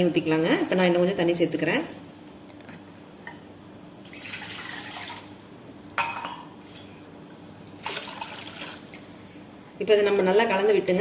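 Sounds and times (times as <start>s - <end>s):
water pouring into a pot: 4.1s - 5.3s, 7.8s - 9.0s.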